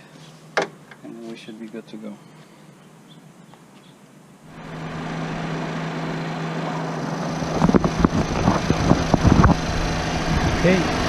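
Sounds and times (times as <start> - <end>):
car engine starting and idling: 4.5 - 11.0.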